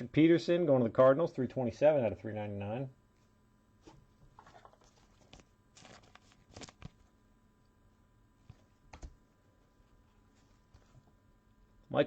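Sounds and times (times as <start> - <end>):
trading cards being handled: 3.8 - 7.1.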